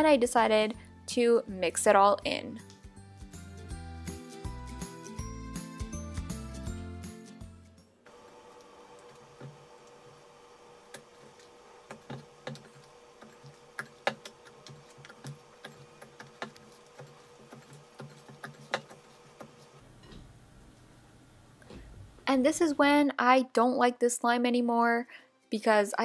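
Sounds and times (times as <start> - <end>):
faint steady hum: 7.8 - 23.1.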